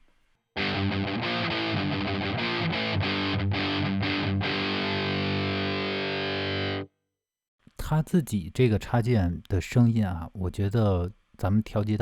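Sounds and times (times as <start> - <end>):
distorted electric guitar riff: 0.6 - 6.9.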